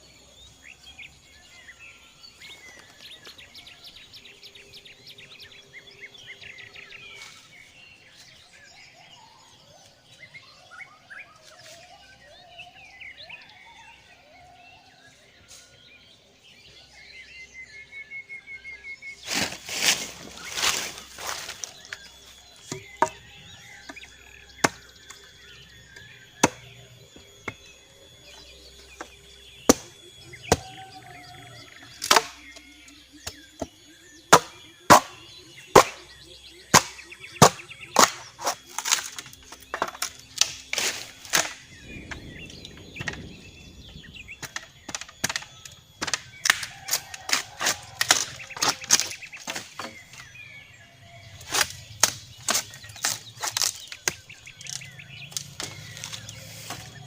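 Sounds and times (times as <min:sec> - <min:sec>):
brush rustling: 0:19.2 - 0:22.2, 0:51.4 - 0:57.0
chopping strikes on wood: 0:22.6 - 0:27.6, 0:29.0 - 0:30.9, 0:31.9 - 0:41.6, 0:44.4 - 0:50.3, 0:51.4 - 0:57.0.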